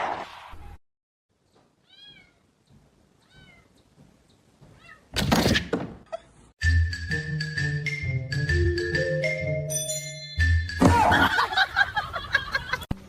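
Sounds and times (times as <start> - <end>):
cat meowing softly: 1.8 - 2.5, 3.2 - 3.8, 4.7 - 5.1.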